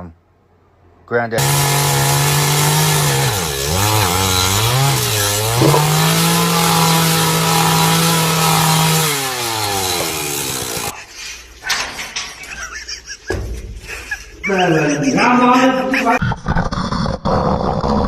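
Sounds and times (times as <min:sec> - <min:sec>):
small engine revving: 0:01.4 - 0:10.9.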